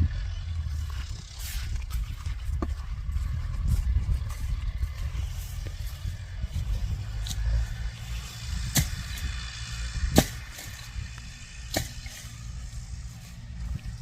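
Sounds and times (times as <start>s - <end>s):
tractor engine low rumble: 0.0s - 14.0s.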